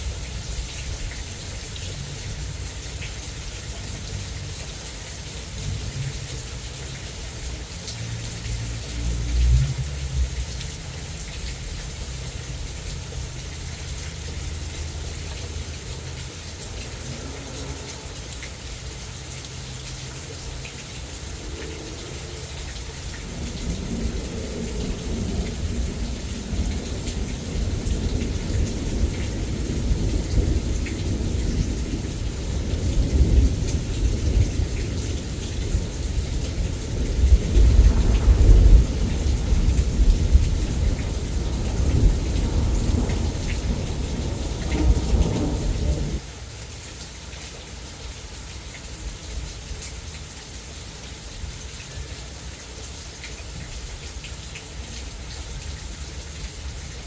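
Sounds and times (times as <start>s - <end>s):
heavy rain: 0.0s - 57.0s
thunder rolling: 20.4s - 46.2s.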